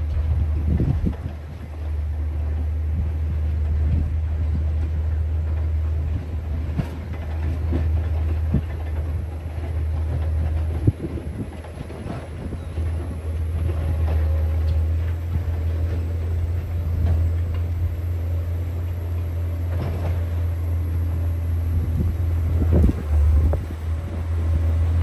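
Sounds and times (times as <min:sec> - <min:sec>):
diesel engine running: 0:00.0 - 0:25.0.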